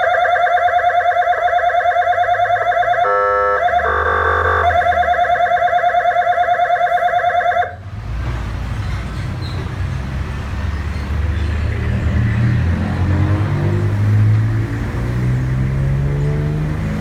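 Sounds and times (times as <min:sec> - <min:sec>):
electronic siren rapid pulsing: 0:00.0 - 0:07.8
vehicle engine and road noise: 0:00.0 - 0:17.0.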